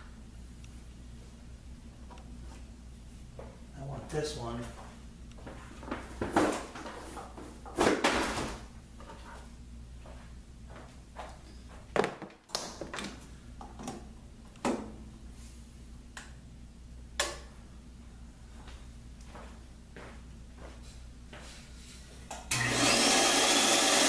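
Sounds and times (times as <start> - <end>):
low steady hum: 0.0 - 7.8, 12.9 - 22.5.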